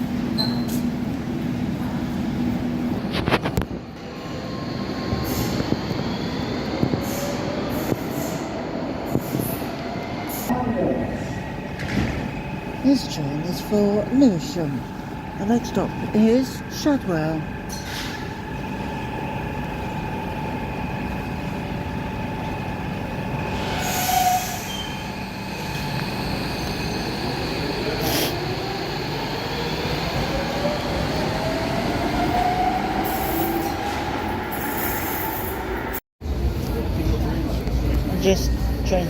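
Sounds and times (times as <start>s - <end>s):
wheel squeal: 0.4s - 0.8s, 23.6s - 25.3s.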